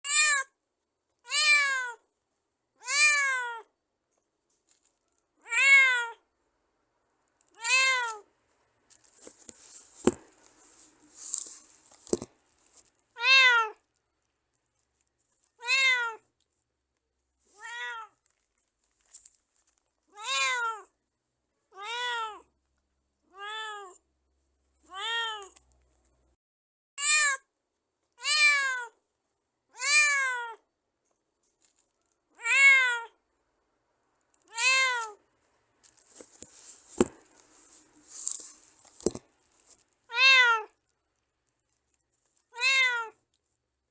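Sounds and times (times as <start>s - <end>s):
cat meowing: 0.1s - 0.5s, 1.3s - 2.0s, 2.8s - 3.7s, 5.4s - 6.2s, 7.6s - 8.2s, 13.2s - 13.8s, 15.6s - 16.2s, 17.6s - 18.2s, 20.1s - 20.9s, 21.7s - 22.5s, 23.3s - 24.0s, 24.9s - 25.6s, 28.2s - 29.0s, 29.7s - 30.6s, 32.4s - 33.2s, 34.5s - 35.2s, 40.1s - 40.8s, 42.5s - 43.2s
faint rustles: 8.0s - 13.2s, 16.3s - 20.2s, 34.3s - 40.2s.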